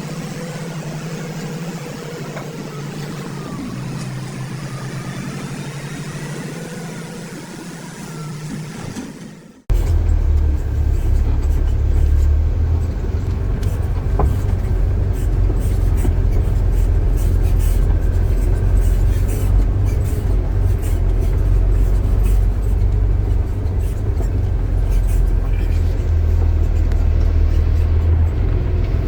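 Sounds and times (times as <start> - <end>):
heavy diesel engine rumbling: 0.0 - 29.0.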